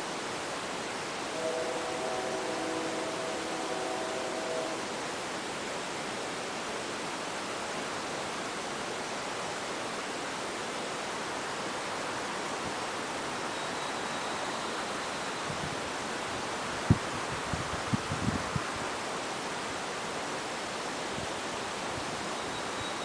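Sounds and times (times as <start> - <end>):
outdoor background hiss: 0.0 - 23.0
faint thin high tone: 13.4 - 15.8, 22.2 - 23.0.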